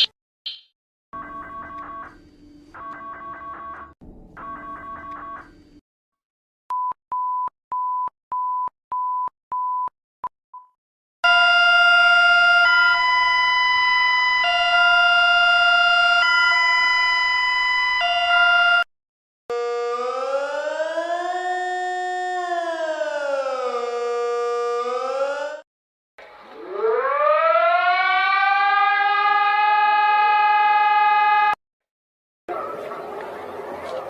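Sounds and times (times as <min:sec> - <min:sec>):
short electronic beeps: 0:00.0 - 0:00.7
multi-tone alarm: 0:01.2 - 0:05.6, 0:11.3 - 0:18.9, 0:19.5 - 0:21.6
rising siren: 0:11.3 - 0:18.9, 0:19.5 - 0:25.6, 0:26.3 - 0:31.6.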